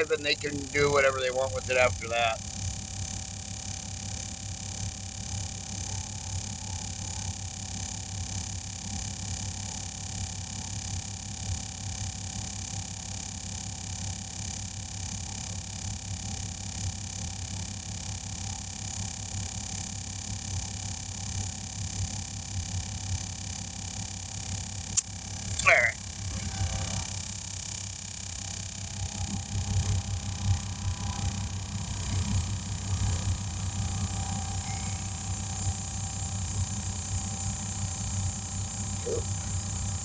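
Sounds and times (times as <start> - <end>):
air compressor running: 25.0 - 40.0.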